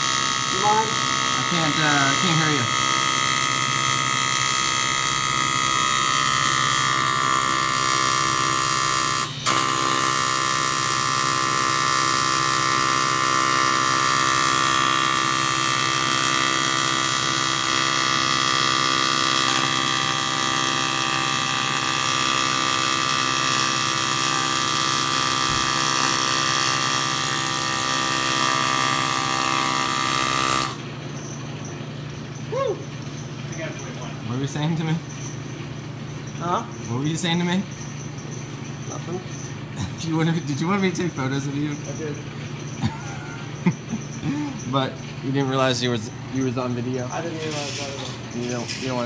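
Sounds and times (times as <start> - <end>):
power tool high whine: 0.0 - 30.8.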